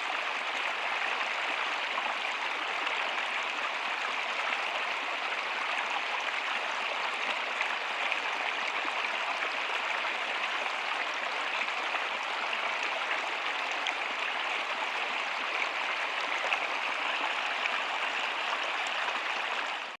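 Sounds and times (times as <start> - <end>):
steady rain: 0.0 - 20.0.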